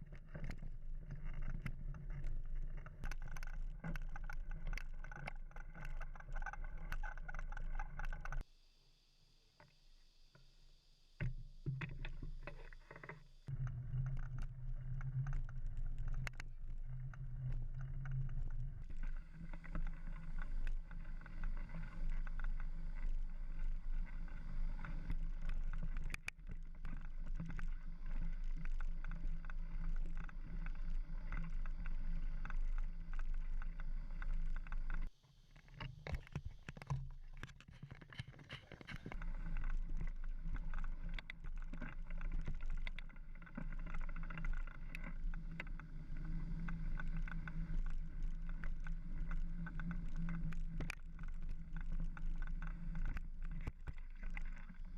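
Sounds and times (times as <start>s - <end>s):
wind and tyres rumbling: 13.5s - 35.2s, 38.1s - 54.9s.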